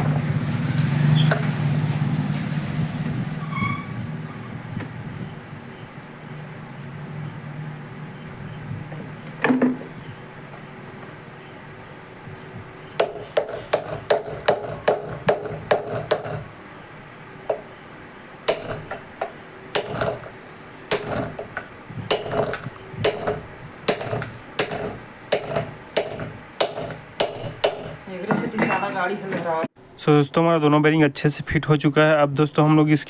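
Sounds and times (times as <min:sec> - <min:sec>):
hammer striking metal: 0:13.0 - 0:16.5, 0:18.5 - 0:29.1.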